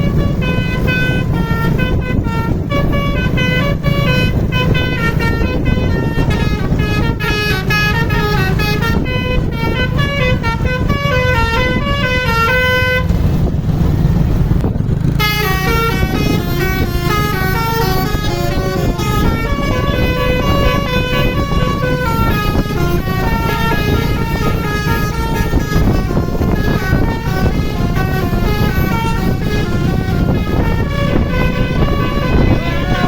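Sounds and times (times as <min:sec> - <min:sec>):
multi-tone air horn melody: 0:00.0 - 0:13.2, 0:15.1 - 0:33.0
steady low rumble: 0:00.0 - 0:33.0.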